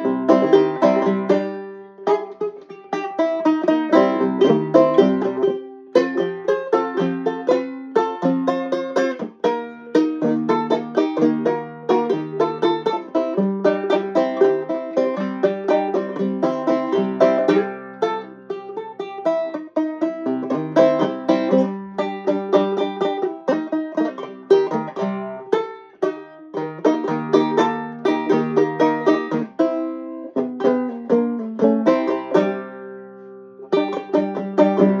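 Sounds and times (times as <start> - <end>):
banjo picking: 0.0 - 35.0.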